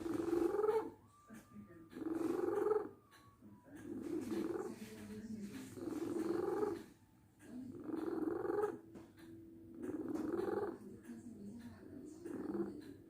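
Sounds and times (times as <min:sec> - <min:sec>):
cat snoring: 0:00.0 - 0:01.0, 0:01.9 - 0:08.9, 0:09.7 - 0:10.9, 0:11.9 - 0:13.0.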